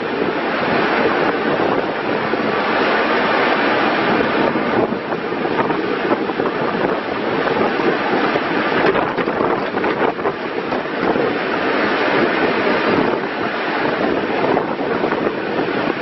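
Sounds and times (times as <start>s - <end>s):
wind on microphone: 0.0s - 16.0s
backhoe engine clatter: 8.6s - 11.2s
clicks and knocks: 8.8s - 10.8s.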